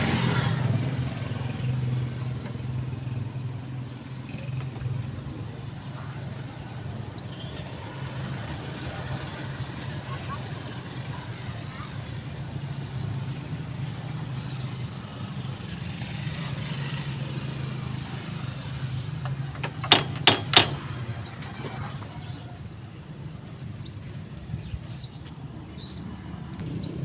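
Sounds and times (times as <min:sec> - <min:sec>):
sharp knocks: 0:19.2 - 0:21.1.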